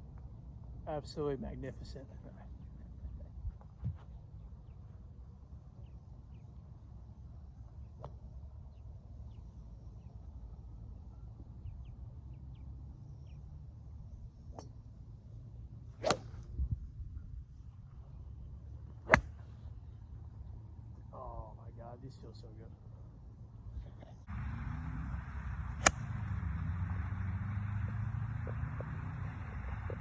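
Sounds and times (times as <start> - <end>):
golf club striking ball: 19.1 - 19.3, 24.3 - 30.0
steady low rumble: 24.2 - 30.0.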